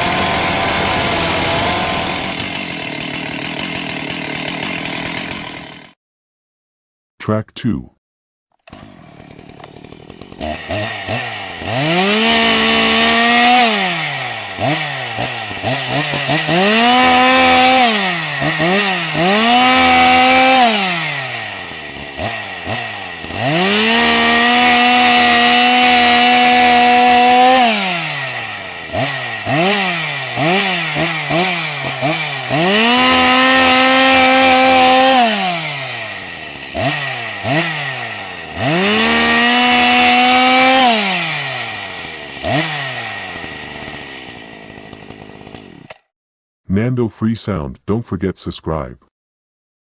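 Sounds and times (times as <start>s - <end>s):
chainsaw engine revving: 0.0s - 6.0s, 8.6s - 46.1s.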